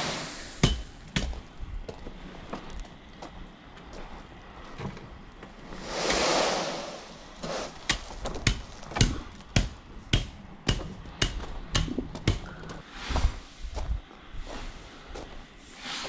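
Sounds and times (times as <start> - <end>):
rushing scrape: 5.7 - 7.9.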